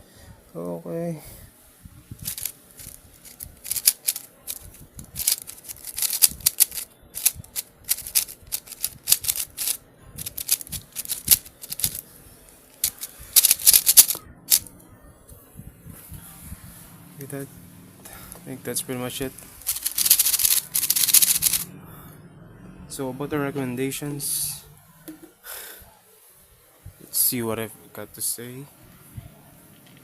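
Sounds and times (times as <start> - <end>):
puzzle cube layers clicking: 2.2 - 12.0, 12.8 - 14.7, 19.6 - 21.7.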